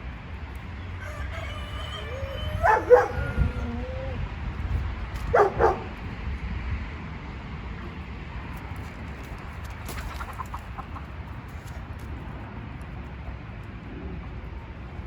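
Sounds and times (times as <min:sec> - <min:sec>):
low background rumble: 0:00.0 - 0:09.6
chickens clucking: 0:01.0 - 0:03.9, 0:09.9 - 0:11.3.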